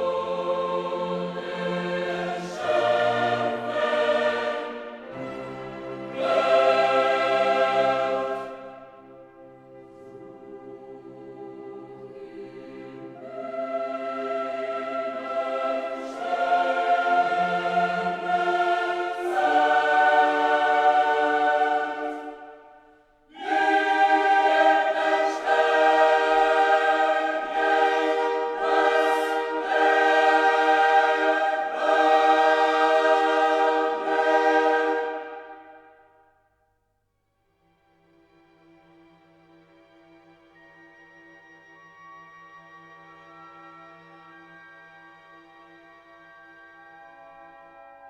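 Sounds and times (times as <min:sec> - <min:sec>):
slow choral chords: 0:00.0 - 0:36.3.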